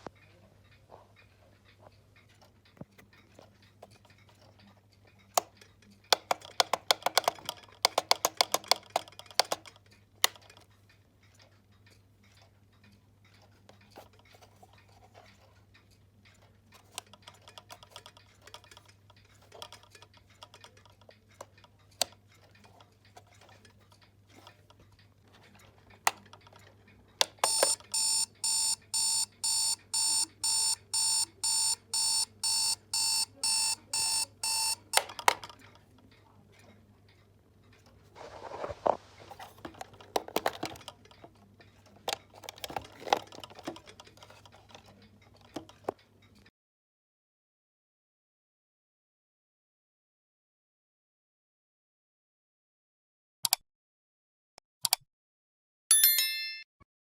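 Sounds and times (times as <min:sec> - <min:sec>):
alarm clock beeping: 0:27.4 - 0:35.2.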